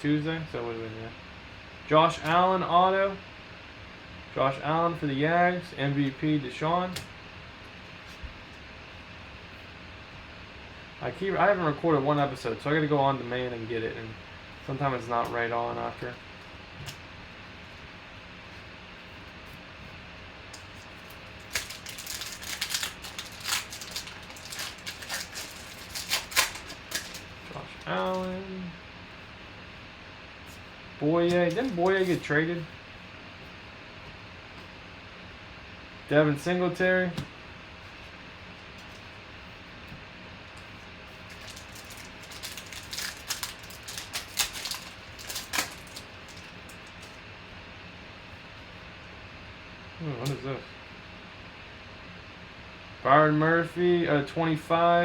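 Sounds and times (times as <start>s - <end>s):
cards being flipped through: 20.6s - 28.4s, 31.2s - 32.3s, 41.3s - 47.2s.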